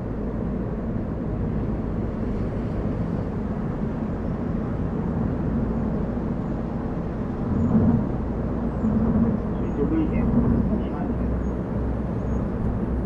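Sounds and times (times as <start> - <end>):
car engine and tyre rumble: 0.0 - 13.0.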